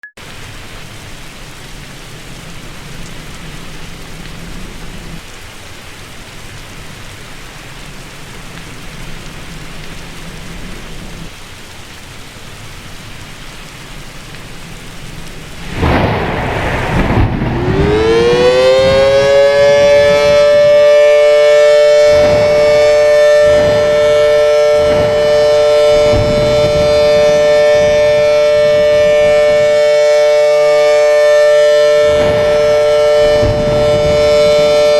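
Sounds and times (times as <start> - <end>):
air-raid siren: 14.6 - 34.9
low thumps: 15.6 - 20.7, 22.0 - 29.7, 32.0 - 34.9.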